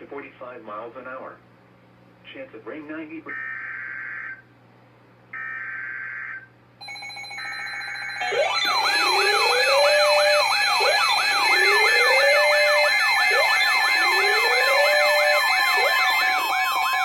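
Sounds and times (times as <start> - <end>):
siren wails: 5.4 - 6.5, 7.5 - 17.0
steady high alert tones: 6.8 - 17.0
buzzy digital data bursts: 8.2 - 17.0.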